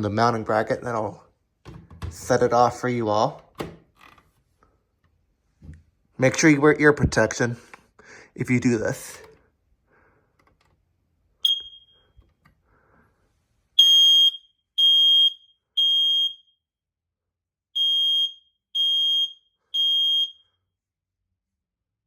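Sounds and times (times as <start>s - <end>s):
smoke alarm high-pitched beeps: 11.4s - 12.1s, 13.8s - 16.6s, 17.8s - 20.5s
smoke alarm chirp: 11.4s - 12.2s, 13.8s - 16.6s, 17.8s - 20.6s.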